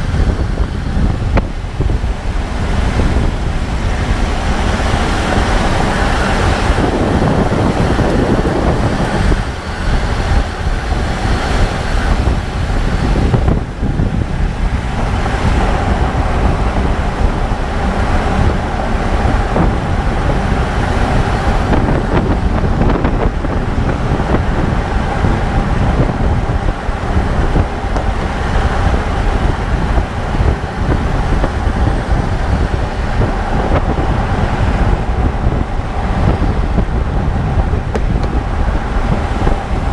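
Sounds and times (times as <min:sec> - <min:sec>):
car road noise: 0:00.0 - 0:39.9.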